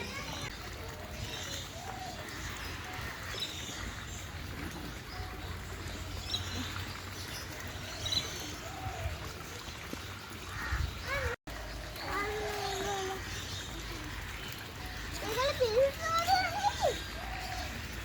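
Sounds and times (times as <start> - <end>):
birds chirping and calling: 0.0 - 18.0.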